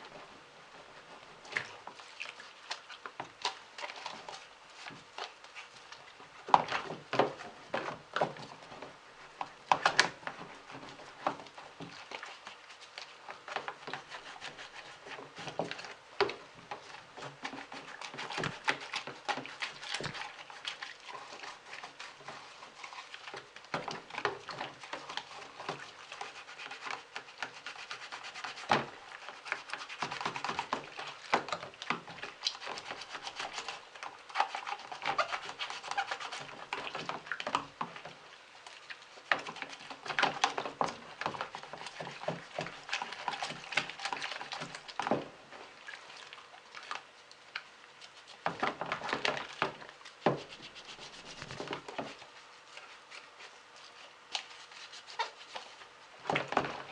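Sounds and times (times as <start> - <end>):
scrubbing fan blades: 0.0 - 56.9.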